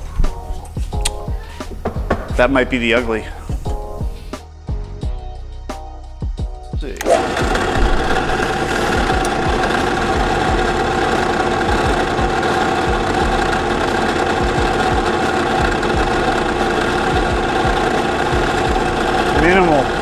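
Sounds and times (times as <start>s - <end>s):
drill press motor whine: 6.9s - 20.0s.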